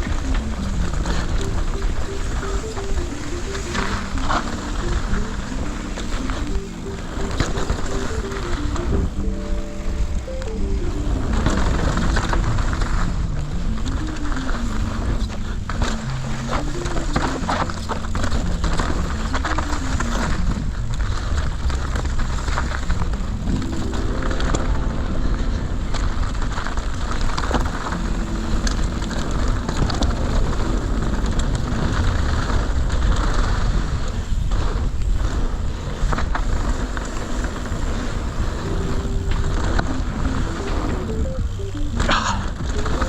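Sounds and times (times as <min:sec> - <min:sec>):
wind on microphone: 0:00.0 - 0:43.0
bike tyres rumbling over rough trail: 0:11.2 - 0:24.2, 0:26.1 - 0:41.2.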